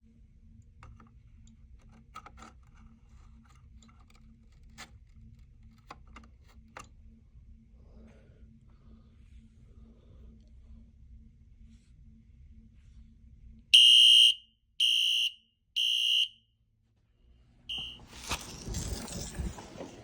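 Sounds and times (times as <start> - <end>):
faint irregular clicks and taps: 0.6 - 7.0.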